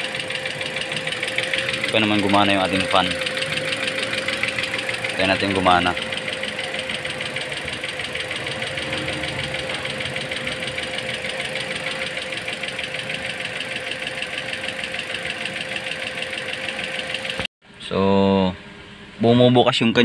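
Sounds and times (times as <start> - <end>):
steady hum: 0.0 - 16.0
car engine idling with knocking: 0.0 - 17.5.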